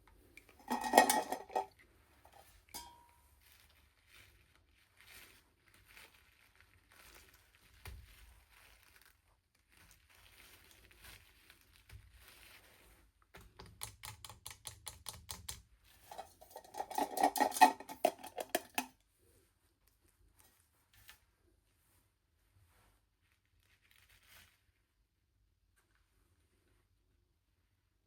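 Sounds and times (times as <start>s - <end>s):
plastic packaging rustling: 3.4s - 12.7s.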